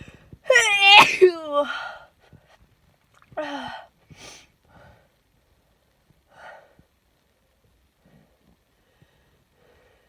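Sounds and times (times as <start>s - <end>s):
woman sneezing: 0.5s - 1.7s.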